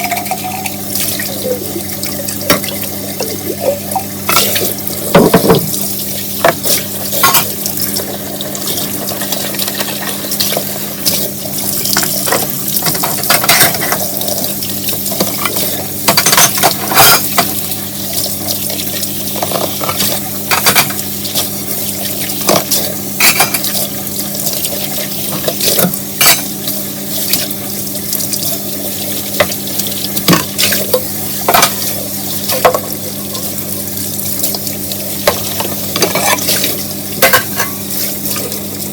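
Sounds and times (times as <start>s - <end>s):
water: 0.0s - 38.9s.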